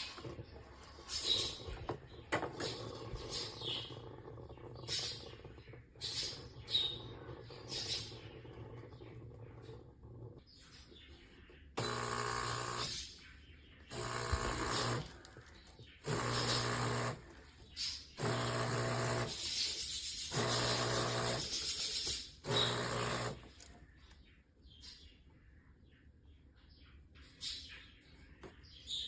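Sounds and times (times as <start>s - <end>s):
espresso machine buzzing: 11.8s - 13.0s, 13.9s - 17.6s, 18.2s - 23.7s.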